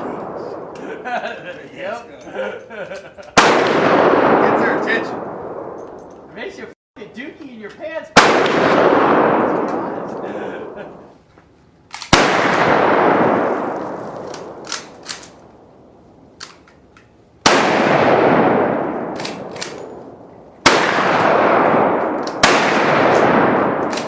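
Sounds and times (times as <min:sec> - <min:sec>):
loud gunshots echoing: 0:03.4 - 0:05.8, 0:08.2 - 0:11.0, 0:12.0 - 0:15.0, 0:17.4 - 0:24.0.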